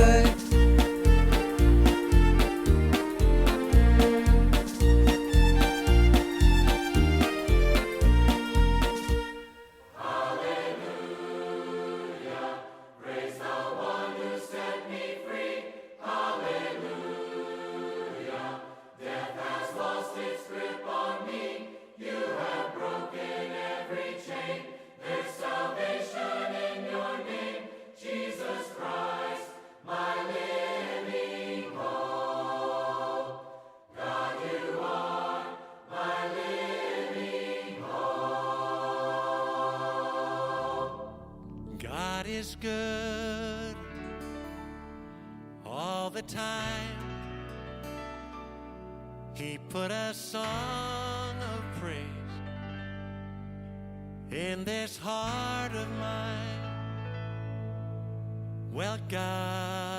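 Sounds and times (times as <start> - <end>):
choir singing slow phrases: 9.3 - 42.2.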